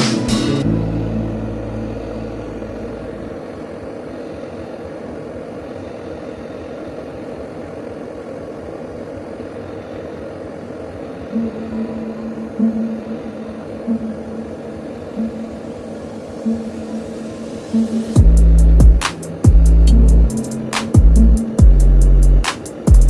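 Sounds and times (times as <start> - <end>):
low drone: 0.0 - 4.5, 11.3 - 22.5
mechanical hum: 0.0 - 23.0.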